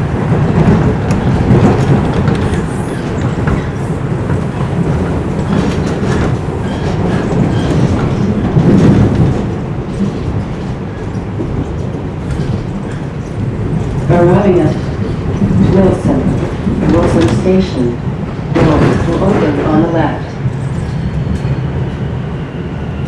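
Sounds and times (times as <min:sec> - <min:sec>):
track clickety-clack: 0:00.0 - 0:22.4
subway train wheel rumble: 0:00.0 - 0:23.0.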